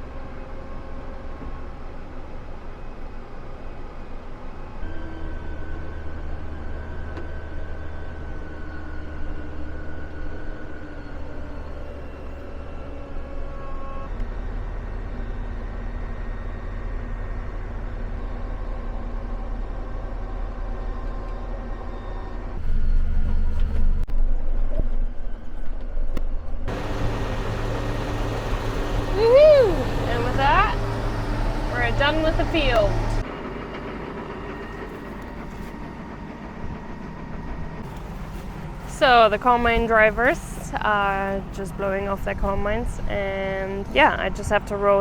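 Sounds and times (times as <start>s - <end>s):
farm machinery engine drone: 13.9s - 23.8s, 26.7s - 42.6s.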